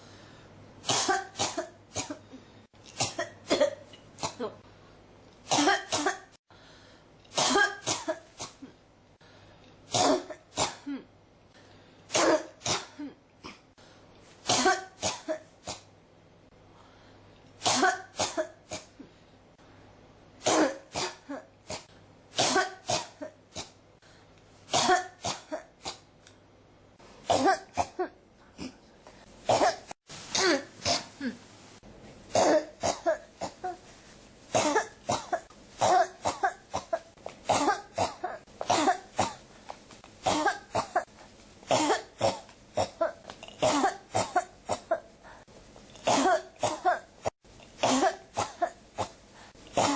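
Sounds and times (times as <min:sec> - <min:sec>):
person coughing: 0:00.8 - 0:04.6, 0:05.5 - 0:06.4, 0:07.3 - 0:08.8, 0:09.9 - 0:11.2, 0:12.1 - 0:13.7, 0:14.4 - 0:15.9, 0:17.6 - 0:19.0, 0:20.4 - 0:23.8, 0:24.7 - 0:26.1, 0:27.2 - 0:28.9, 0:29.5 - 0:31.4, 0:32.3 - 0:33.8, 0:34.5 - 0:39.4, 0:40.2 - 0:41.1, 0:41.7 - 0:45.1, 0:46.0 - 0:49.9.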